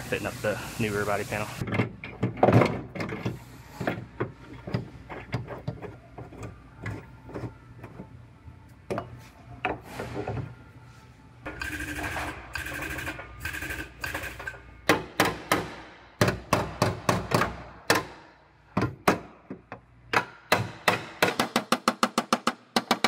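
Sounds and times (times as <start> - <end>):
metal clanks and knocks: 1.6 - 8.1
rhythmic mechanical sound: 11.4 - 15.8.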